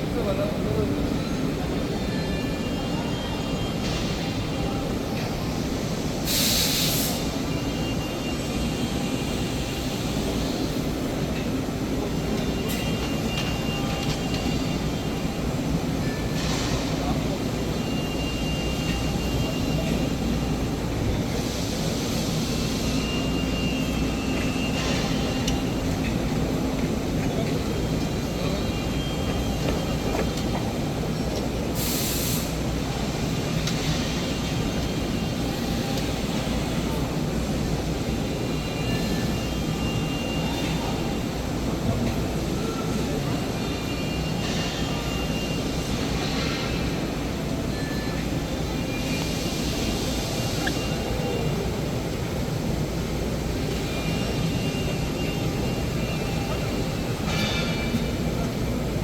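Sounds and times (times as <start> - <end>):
burst of air hiss: 6.2 - 7.4, 31.8 - 32.6.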